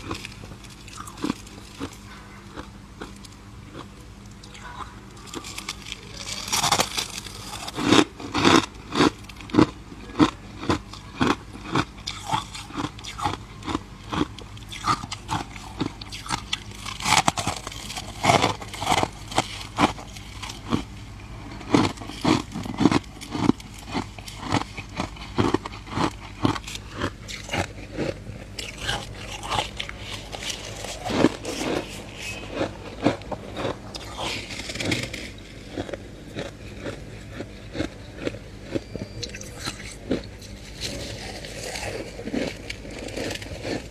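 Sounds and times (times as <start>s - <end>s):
chewing crunchy ice: 0.0s - 43.9s.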